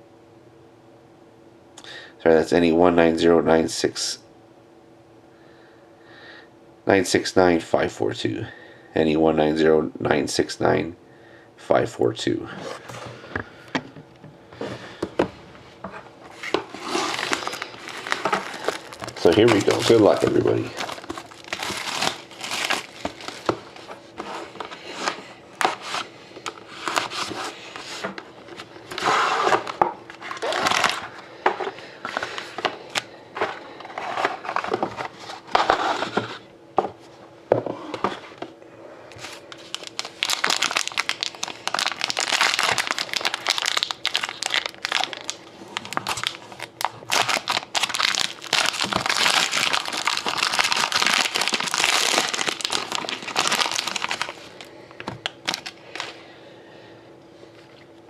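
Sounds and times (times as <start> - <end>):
plastic wrapping crinkling: 16.2 - 31.2, 39.2 - 56.2.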